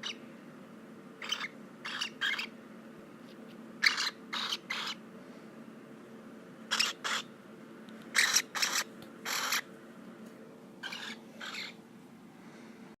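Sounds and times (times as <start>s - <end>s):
faint steady hum: 0.0s - 13.0s
cockatiel scratchy hissing: 3.8s - 5.0s, 6.7s - 7.3s, 8.1s - 9.7s, 10.8s - 11.8s.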